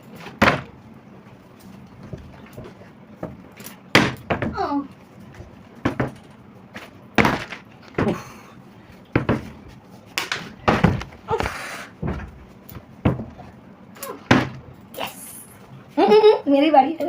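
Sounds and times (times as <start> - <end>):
plastic bottle landing thuds: 0.4 - 0.7, 3.2 - 4.7, 7.2 - 8.3, 10.2 - 12.4, 14.2 - 14.6.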